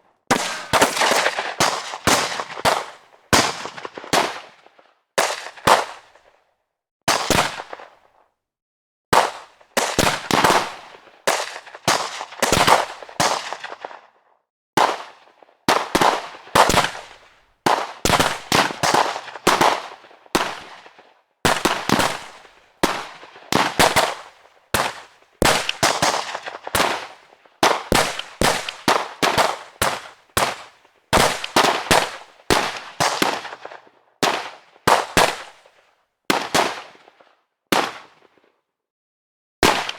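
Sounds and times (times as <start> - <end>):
gunshots with echo: 0.3 - 4.6.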